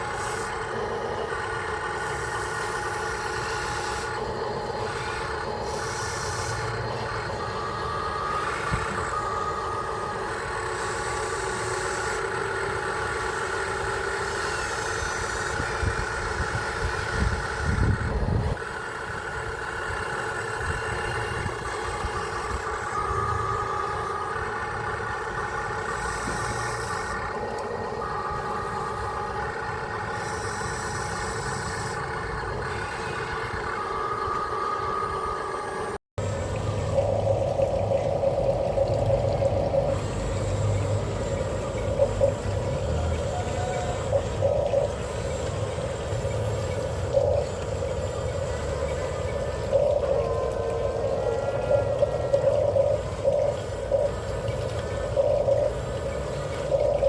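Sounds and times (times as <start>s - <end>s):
toy truck motor whine: 0.0s - 57.0s
low rumbling: 15.1s - 57.0s.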